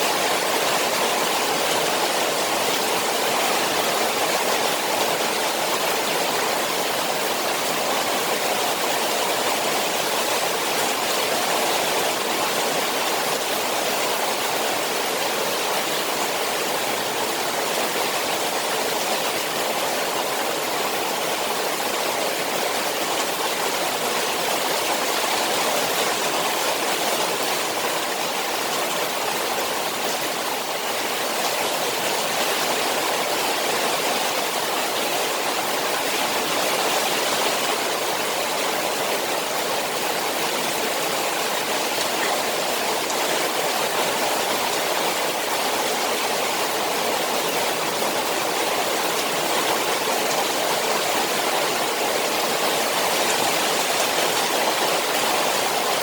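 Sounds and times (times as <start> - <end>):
rain falling on pond: 0.0 - 56.0.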